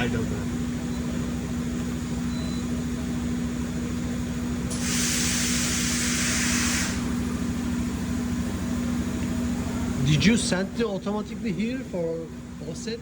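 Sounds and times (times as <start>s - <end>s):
steady machine hum: 0.0s - 13.0s
compressed air hiss: 4.7s - 7.2s.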